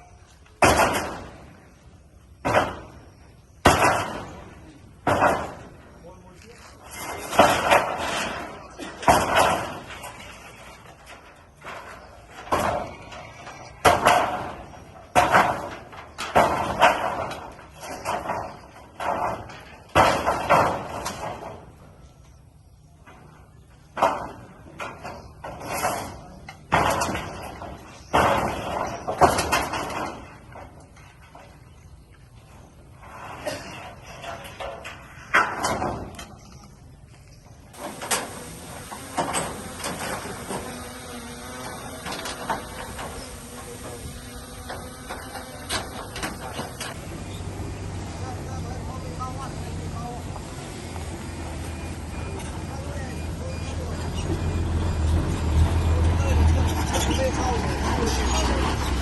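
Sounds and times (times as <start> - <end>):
sudden bangs and clatters: 0.6 - 1.7, 2.4 - 6.0, 7.0 - 21.8, 23.9 - 30.8.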